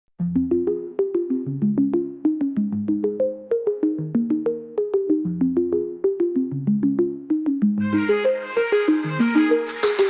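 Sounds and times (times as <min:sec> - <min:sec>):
quick percussive melody: 0:07.8 - 0:10.0.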